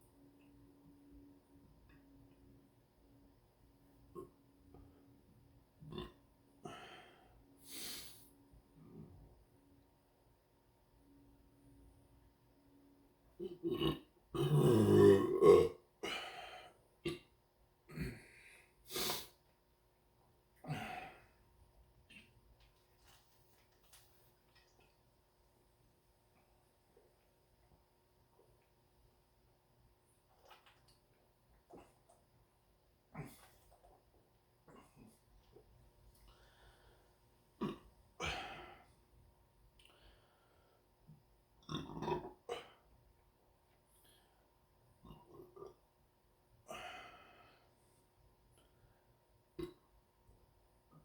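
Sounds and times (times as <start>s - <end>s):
person burping loudly: 5.8s - 6.8s, 13.4s - 16.4s, 37.6s - 38.8s, 41.6s - 42.8s, 49.6s - 49.9s
short burps and breaths: 33.1s - 34.0s, 37.6s - 38.9s, 41.6s - 42.9s, 49.5s - 49.9s.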